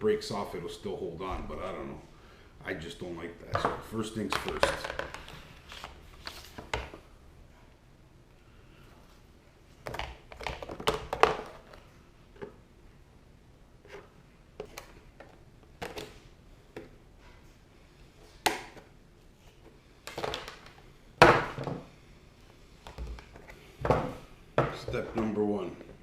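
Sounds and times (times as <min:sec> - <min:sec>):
hard plastic parts knocking and clicking: 0:03.5 - 0:05.3, 0:22.8 - 0:25.9.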